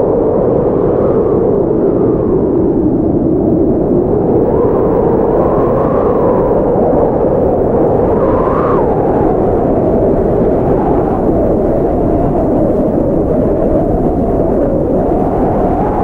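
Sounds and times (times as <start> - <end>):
blizzard wind blowing hard: 0.0 - 16.0.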